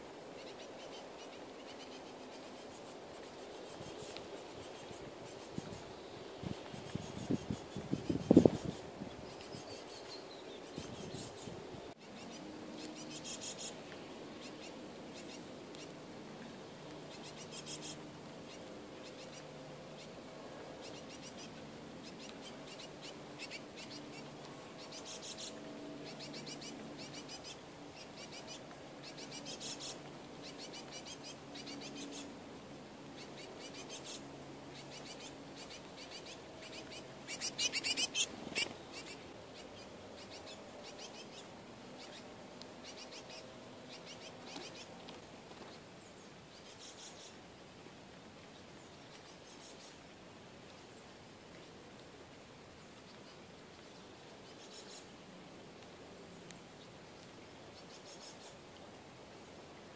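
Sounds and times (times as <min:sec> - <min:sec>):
birds chattering calls: 0:00.0 - 0:32.4, 0:33.0 - 0:47.5
low background hum: 0:00.0 - 0:59.9.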